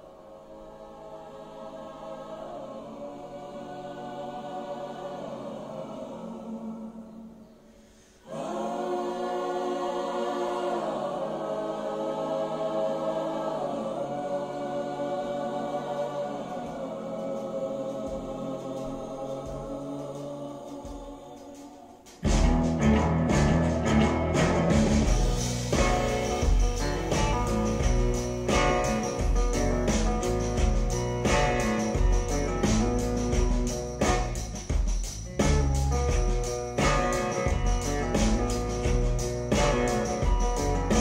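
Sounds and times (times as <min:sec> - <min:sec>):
wordless choir singing chords: 0:00.0 - 0:23.0, 0:23.6 - 0:41.0
loud band with drums: 0:22.1 - 0:41.0.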